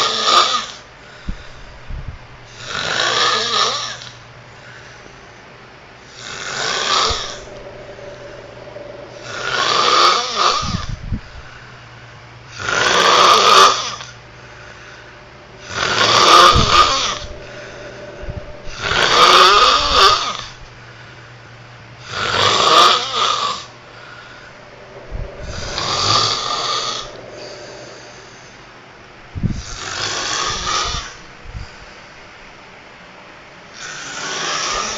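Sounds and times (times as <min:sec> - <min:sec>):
loud snoring: 0:00.0 - 0:00.8, 0:02.5 - 0:04.2, 0:06.1 - 0:10.9, 0:12.5 - 0:14.2, 0:14.9 - 0:20.6, 0:22.0 - 0:28.6, 0:29.6 - 0:31.2, 0:33.8 - 0:34.9.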